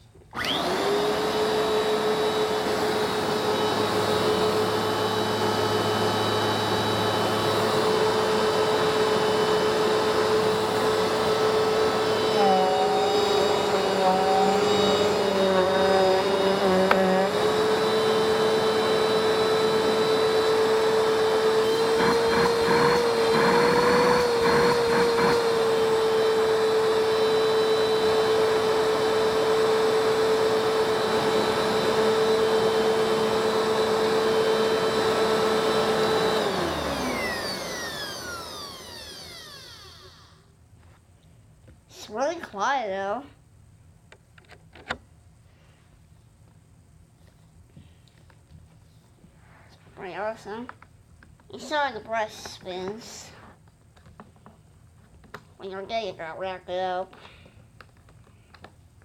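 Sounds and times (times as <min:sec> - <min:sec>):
vacuum cleaner motor whine: 0:00.3 - 0:41.0.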